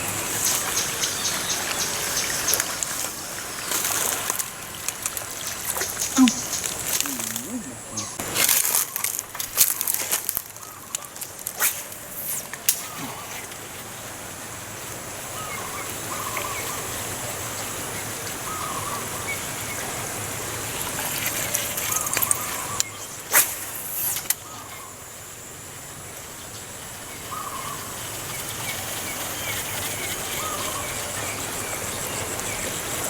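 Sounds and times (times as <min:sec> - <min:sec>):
steady high-pitched hiss: 0:00.0 - 0:33.0
chirping bird calls: 0:05.4 - 0:08.2
sharp swish: 0:11.6 - 0:13.0.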